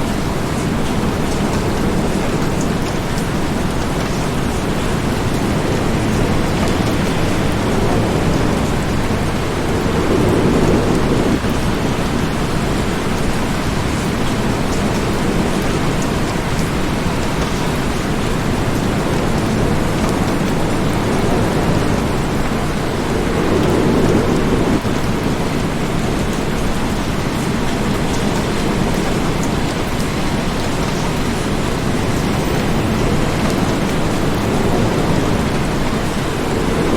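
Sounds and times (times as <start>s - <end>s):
heavy rain falling: 0.0s - 36.9s.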